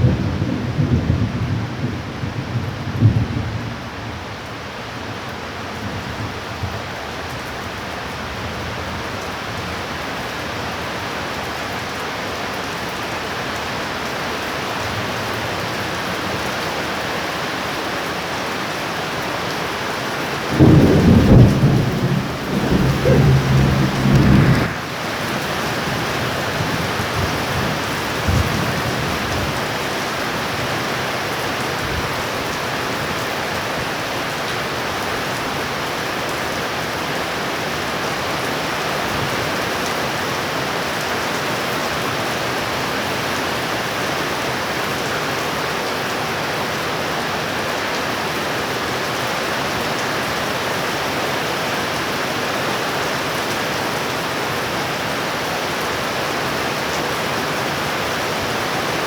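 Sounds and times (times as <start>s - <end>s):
heavy rain pouring: 0.0s - 59.0s
thunder rumble: 20.4s - 29.0s.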